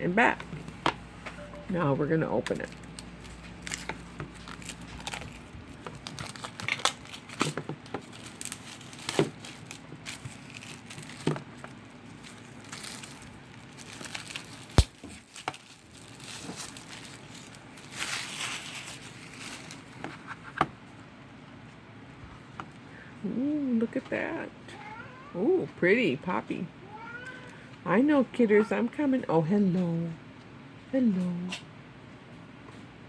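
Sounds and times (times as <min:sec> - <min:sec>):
crackles and clicks: 0:02.4 - 0:20.5
packaging tearing and crinkling: 0:02.5 - 0:20.1.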